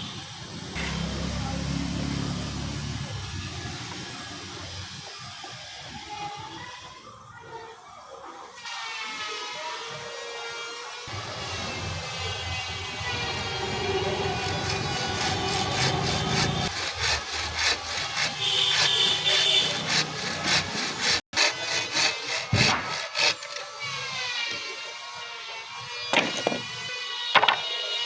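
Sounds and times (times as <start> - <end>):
hand saw cutting wood: 13.0 - 24.9.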